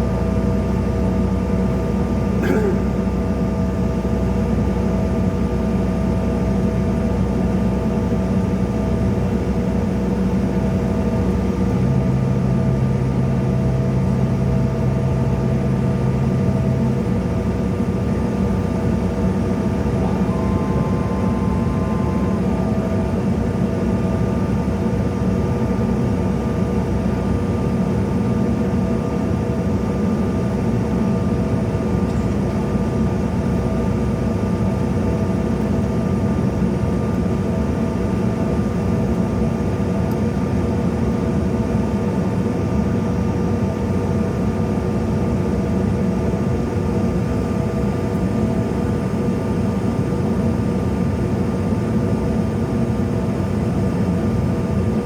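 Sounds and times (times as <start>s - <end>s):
jet engine cabin rumble: 0.0s - 55.0s
low hum: 19.4s - 25.4s.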